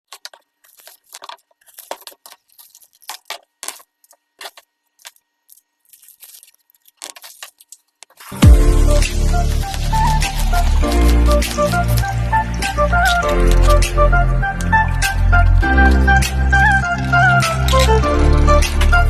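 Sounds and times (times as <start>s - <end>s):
music with strong bass: 8.4s - 19.0s.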